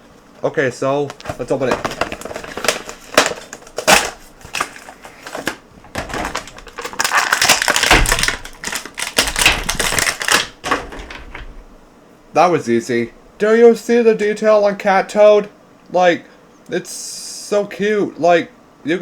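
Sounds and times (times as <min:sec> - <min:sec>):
packaging crinkling: 0:01.0 - 0:11.8.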